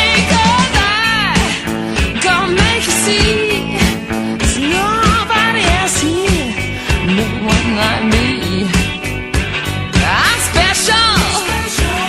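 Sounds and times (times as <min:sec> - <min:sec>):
steady drum beat: 0:00.0 - 0:12.0
pitch-sliding melody: 0:02.0 - 0:09.3.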